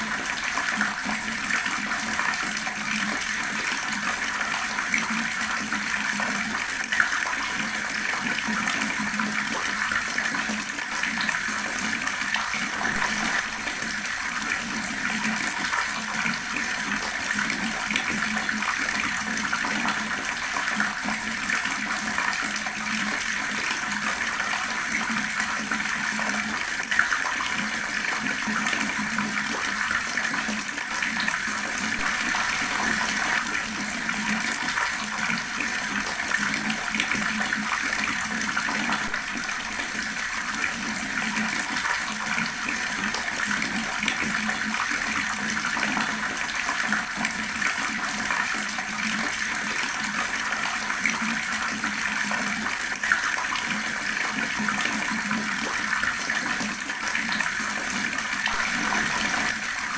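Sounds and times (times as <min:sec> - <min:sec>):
tap water running and splashing: 0:00.0 - 0:59.9.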